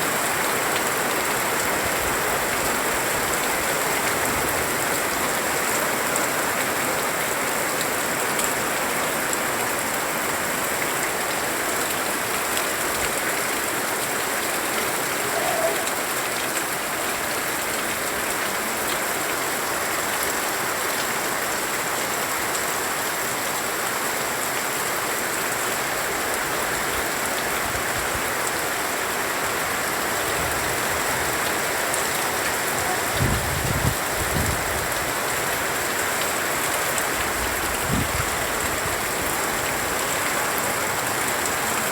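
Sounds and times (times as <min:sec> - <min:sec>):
heavy rain pouring: 0:00.0 - 0:41.9.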